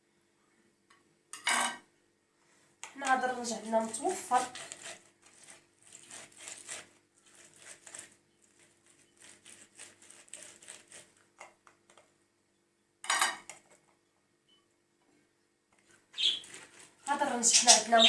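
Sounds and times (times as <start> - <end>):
utensils and dishes clinking: 1.4 - 1.8, 13.0 - 13.5.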